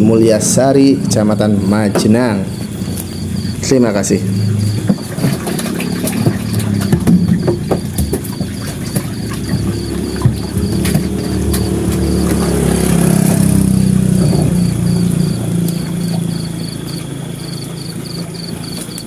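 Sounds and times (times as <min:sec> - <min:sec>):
crickets chirping: 0:00.0 - 0:19.0
small engine humming: 0:08.5 - 0:19.0.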